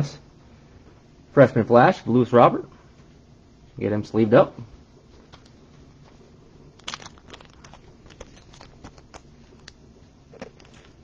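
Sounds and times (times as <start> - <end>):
plastic card sleeve crinkling: 6.8 - 11.0.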